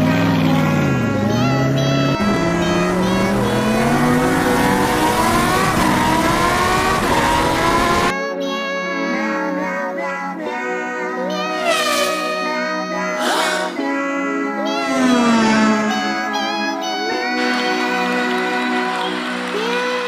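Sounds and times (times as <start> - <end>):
race car engine accelerating: 0.0 - 8.1, 14.6 - 19.9
background music: 0.0 - 20.0.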